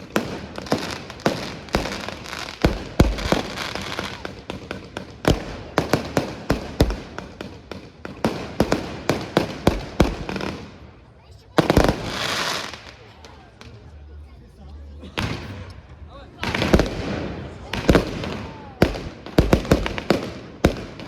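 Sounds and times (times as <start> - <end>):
deep firework booms: 0.0 - 10.7, 16.4 - 21.0
fireworks bangs and crackles: 0.0 - 14.1, 15.0 - 21.0.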